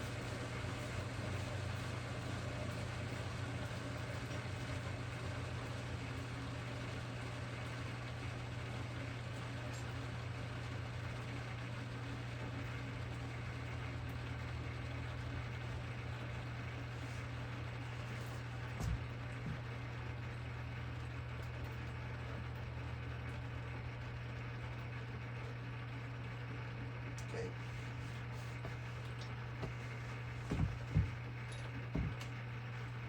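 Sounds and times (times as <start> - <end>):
machine motor humming: 27.2 - 33.0.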